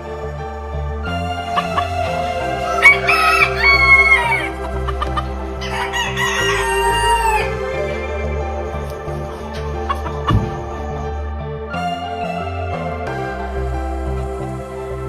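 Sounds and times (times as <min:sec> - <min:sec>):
background music: 0:00.0 - 0:15.0
rooster crowing: 0:02.6 - 0:04.6, 0:05.6 - 0:08.0.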